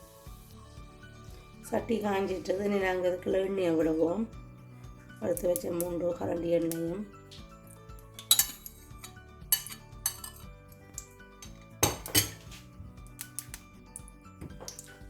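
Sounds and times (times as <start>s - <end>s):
background music: 0.0s - 15.0s
metal spoon clinking on a pot: 8.2s - 12.6s.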